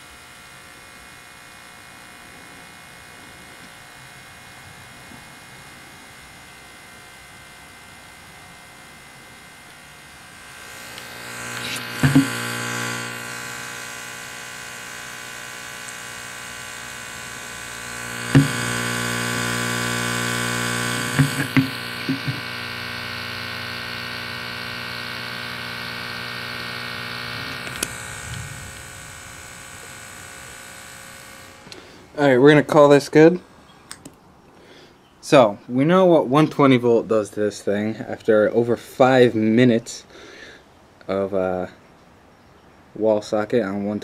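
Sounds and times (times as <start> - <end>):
sharp crackles and pops: 0.0 - 31.9
speaker buzzing with mains hum: 0.0 - 44.0.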